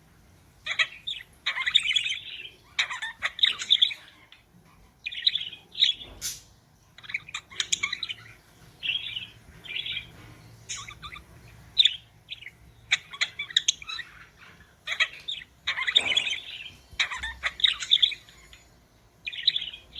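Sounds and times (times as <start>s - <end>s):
budgerigars chirping: 0.6s - 19.9s.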